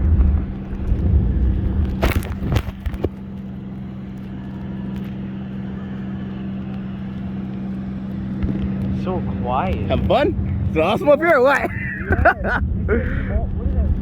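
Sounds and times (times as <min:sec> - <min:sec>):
boat engine drone: 0:00.0 - 0:14.0.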